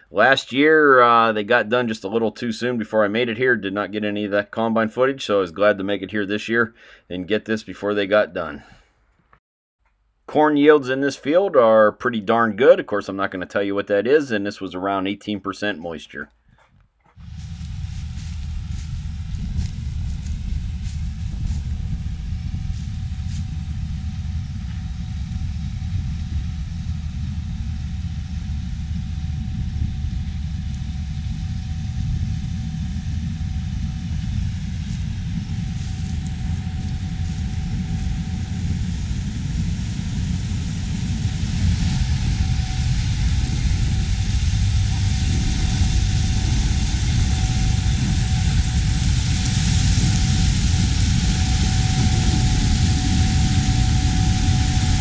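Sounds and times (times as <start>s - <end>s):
combine harvester engine rumble: 17.2s - 55.0s.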